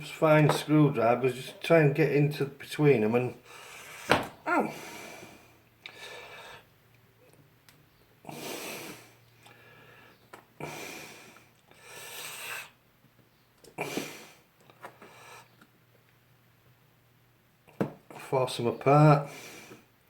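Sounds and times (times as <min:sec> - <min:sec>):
person breathing out hard: 0:03.4 - 0:06.7.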